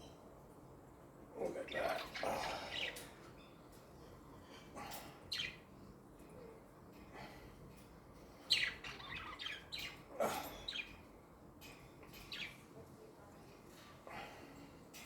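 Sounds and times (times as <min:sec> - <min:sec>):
budgies chirping: 0:01.5 - 0:03.1, 0:05.3 - 0:05.6, 0:08.4 - 0:11.0, 0:12.1 - 0:12.6.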